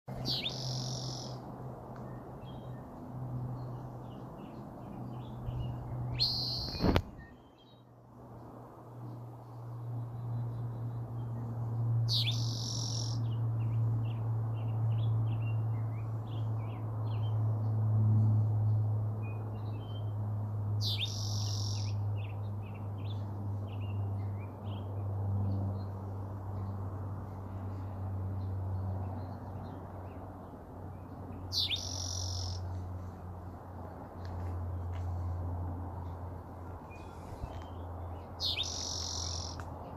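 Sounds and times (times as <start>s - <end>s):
bird harsh call and chirps: 0.1s - 1.4s, 5.2s - 7.8s, 12.1s - 13.4s, 20.8s - 23.2s, 31.4s - 32.8s, 36.8s - 39.6s
bird calling: 0.2s - 1.4s, 31.5s - 32.6s, 38.4s - 39.6s.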